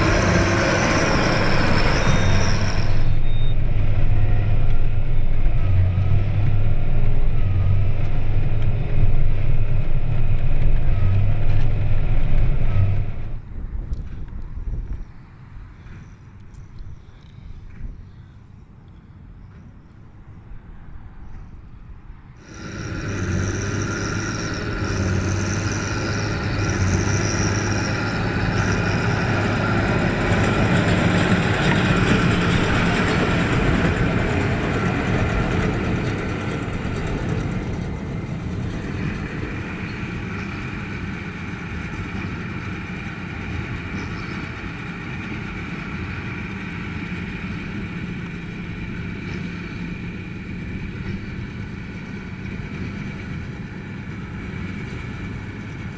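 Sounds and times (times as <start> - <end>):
tractor diesel engine running: 0.0 - 14.3, 22.4 - 55.9.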